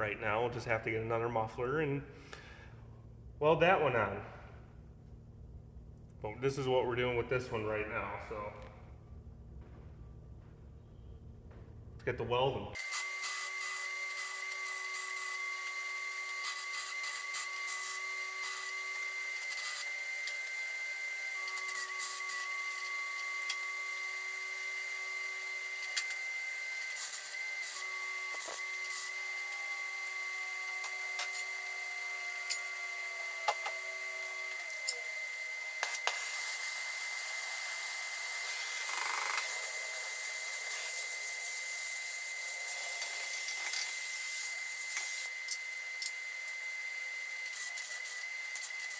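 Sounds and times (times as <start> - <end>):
low hum: 2.5 - 12.8
arc welding crackling hiss: 12.8 - 20.4, 21.4 - 31.6, 35.8 - 46.6, 47.4 - 48.9.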